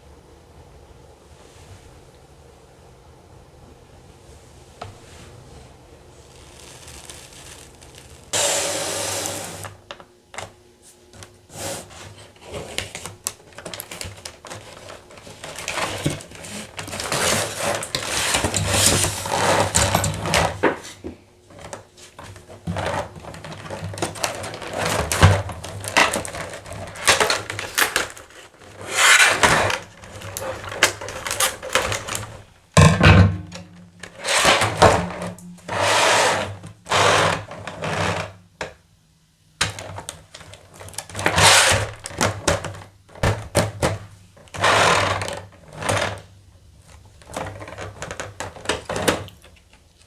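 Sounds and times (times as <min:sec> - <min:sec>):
packaging rustling: 0:06.3 - 0:08.3, 0:12.7 - 0:20.6, 0:21.6 - 0:32.6.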